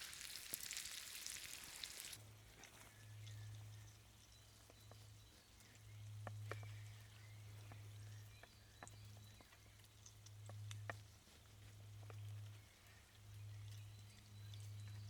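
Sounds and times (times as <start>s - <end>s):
campfire crackling and popping: 0.0s - 2.2s.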